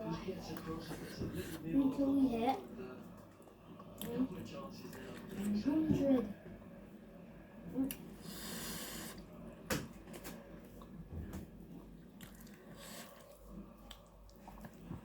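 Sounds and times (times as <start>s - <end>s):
person chewing: 12.0s - 15.0s.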